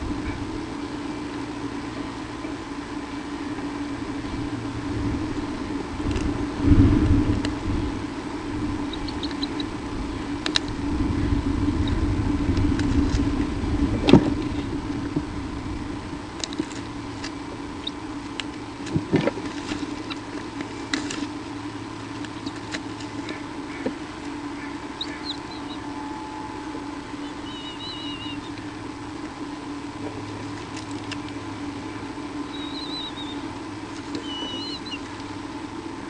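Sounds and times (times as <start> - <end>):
electrical hum: 0.0 - 36.0
low rumble: 4.1 - 18.2
birds scratching and knocking in nest: 16.3 - 25.7
faint high chirp: 25.0 - 28.6, 32.5 - 33.4, 34.2 - 35.0.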